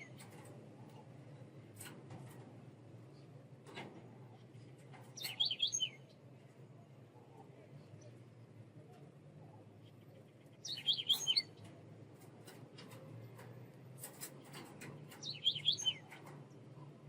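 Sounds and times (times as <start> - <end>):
songbird chirping: 5.2 - 6.4, 9.8 - 11.8, 15.2 - 16.2.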